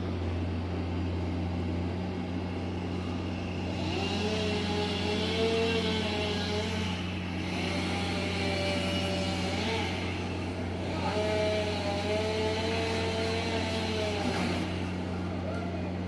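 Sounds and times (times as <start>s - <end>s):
low engine drone: 0.0s - 16.0s.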